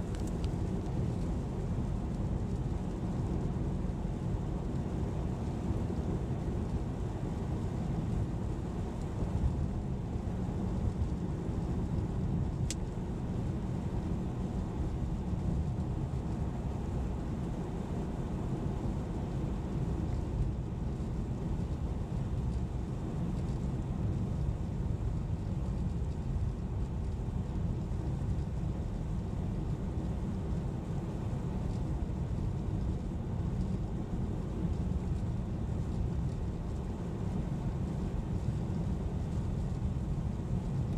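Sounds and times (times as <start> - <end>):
car road and engine noise: 0.0 - 40.9.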